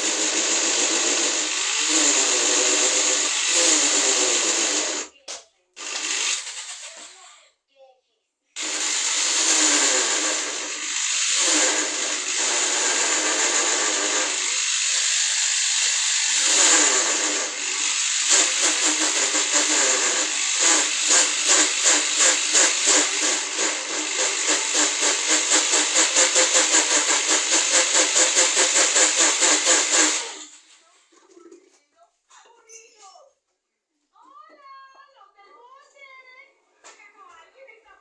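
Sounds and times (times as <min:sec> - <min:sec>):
power drill running: 0:00.0 - 0:05.1, 0:05.8 - 0:07.2, 0:08.6 - 0:30.8.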